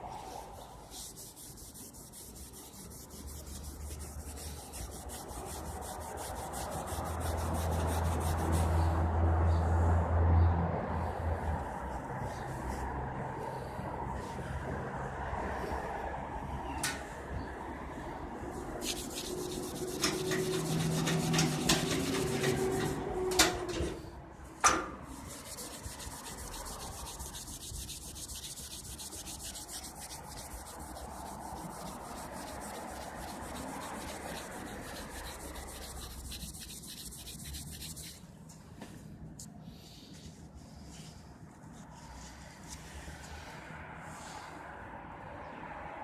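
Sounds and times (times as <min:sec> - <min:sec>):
cloth rubbing on metal handle: 0:00.2 - 0:08.9, 0:18.5 - 0:24.0, 0:25.1 - 0:38.2.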